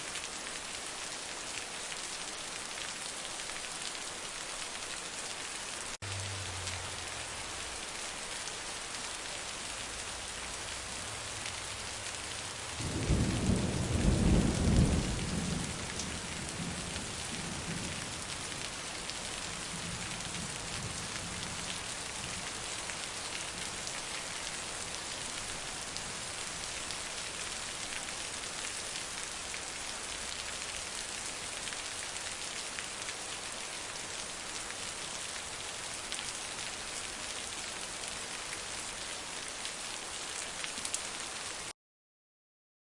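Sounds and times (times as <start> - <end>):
heavy rain: 0.0 - 41.7
thunder rumbling: 12.5 - 18.3.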